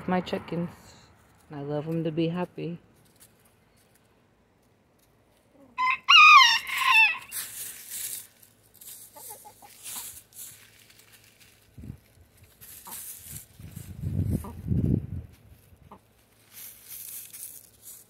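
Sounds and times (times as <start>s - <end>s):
chickens clucking and rustling: 3.0s - 6.0s, 6.6s - 18.0s
rooster crowing: 5.8s - 7.4s.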